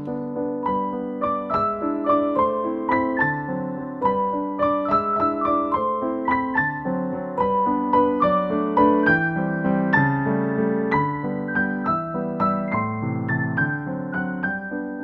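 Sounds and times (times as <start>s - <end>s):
gentle piano melody: 0.0s - 15.0s.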